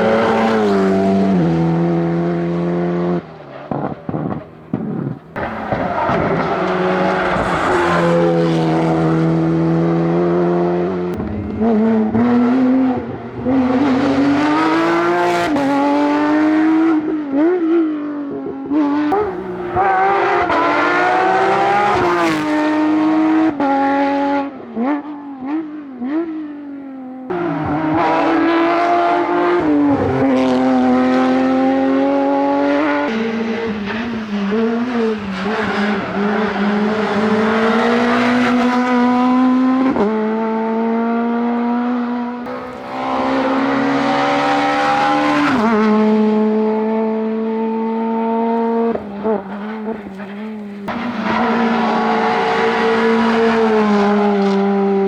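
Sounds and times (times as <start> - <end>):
second car revving through gears: 0.0 - 18.0, 18.7 - 26.3, 27.3 - 55.0
rally car engine revving: 0.0 - 55.0.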